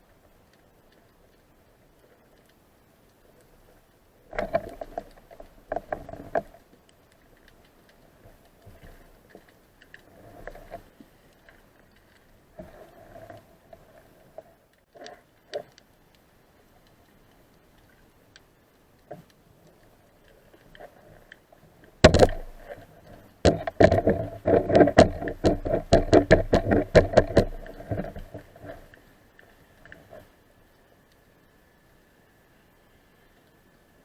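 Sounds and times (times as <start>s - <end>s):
sharp knocks underwater: 22.0s - 22.8s, 23.4s - 28.8s.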